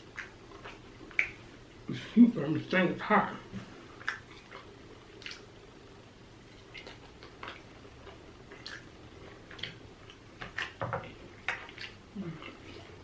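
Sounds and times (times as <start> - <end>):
chewing and lip-smacking: 0.0 - 1.5, 4.0 - 5.6, 6.4 - 13.0.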